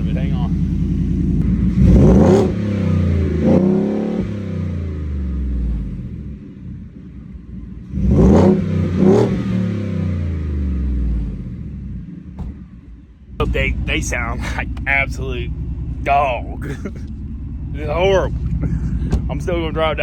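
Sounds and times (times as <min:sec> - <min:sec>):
engine revving: 0:00.0 - 0:07.0, 0:07.6 - 0:12.7, 0:13.4 - 0:20.0.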